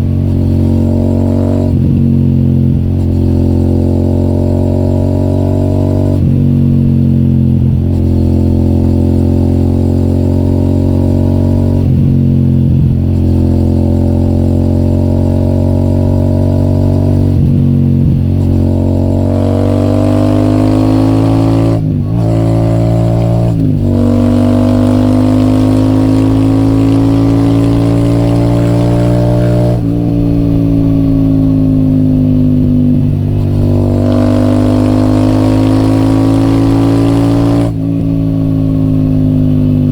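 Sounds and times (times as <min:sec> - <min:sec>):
motorcycle engine while riding: 0:00.0 - 0:39.9.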